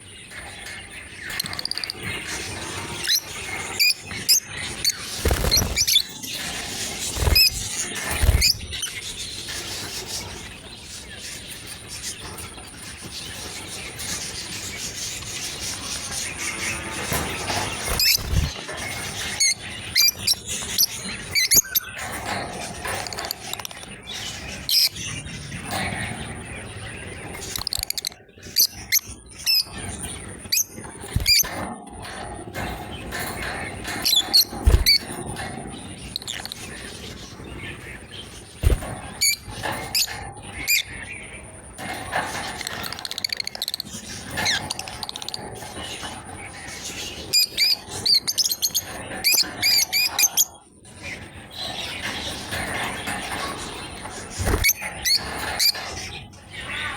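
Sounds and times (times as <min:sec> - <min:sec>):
lovebirds chirping: 0:00.0 - 0:56.9.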